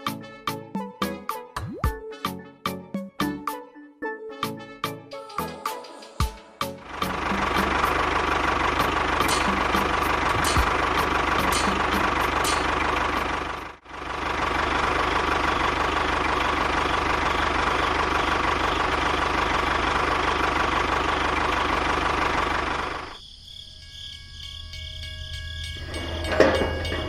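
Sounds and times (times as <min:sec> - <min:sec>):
engine running steadily: 0:06.7 - 0:23.2.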